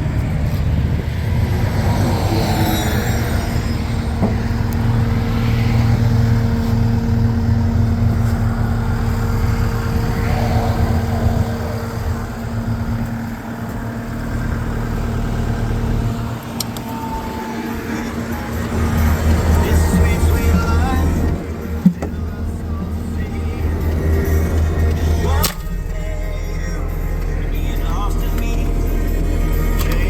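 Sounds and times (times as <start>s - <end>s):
diesel engine running: 0.0s - 30.0s.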